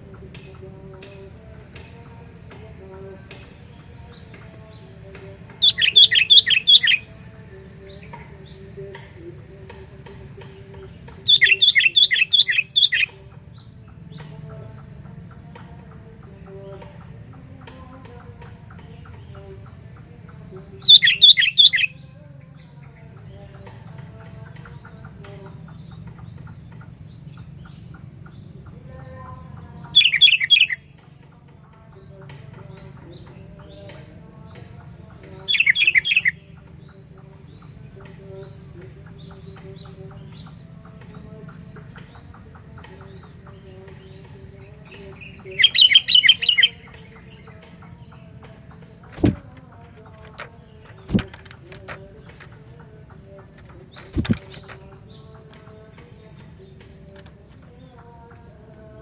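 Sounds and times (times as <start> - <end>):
bird chirping: 0.1 - 8.7, 10.7 - 15.2, 20.6 - 22.0, 29.9 - 30.8, 35.4 - 36.4, 45.0 - 47.4, 48.9 - 58.8.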